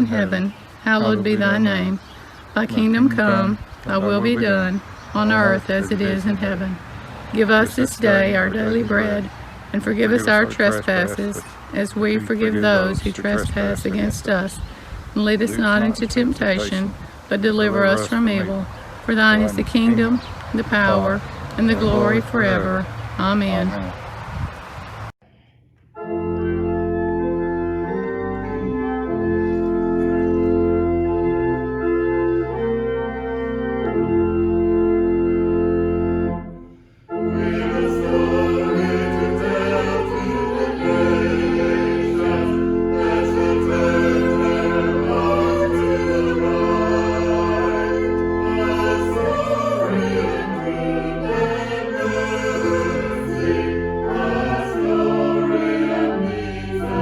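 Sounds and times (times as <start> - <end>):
choir singing: 0.0 - 2.0, 2.6 - 6.8, 7.4 - 14.6, 15.2 - 22.9, 36.4 - 57.0
church organ chords: 0.0 - 24.0, 25.9 - 57.0.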